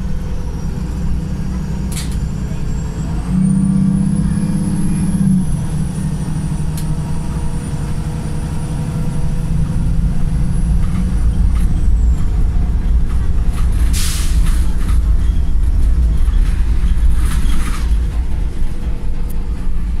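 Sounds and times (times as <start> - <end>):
bus diesel engine running: 0.0 - 20.0
air brake hiss: 13.9 - 14.6.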